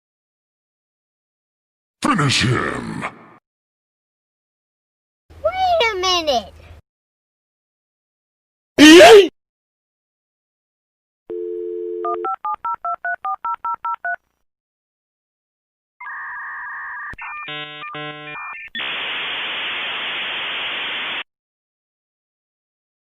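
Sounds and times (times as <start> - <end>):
dial tone: 11.3 - 14.2
touch-tone dialling: 11.3 - 14.2.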